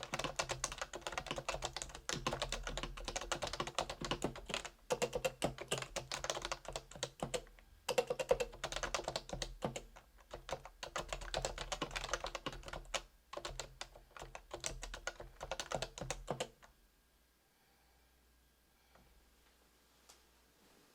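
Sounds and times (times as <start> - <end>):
keyboard typing: 0.0 - 16.7.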